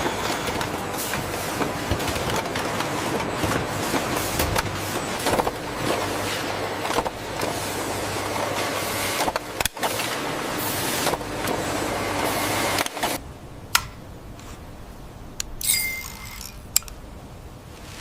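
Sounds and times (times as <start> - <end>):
sharp metal clinks: 15.6 - 16.8.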